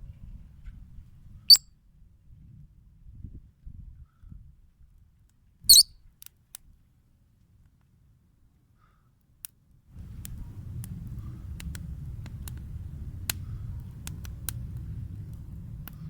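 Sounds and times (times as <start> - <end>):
bonfire crackling and popping: 10.0 - 16.0
low rumble: 10.0 - 16.0.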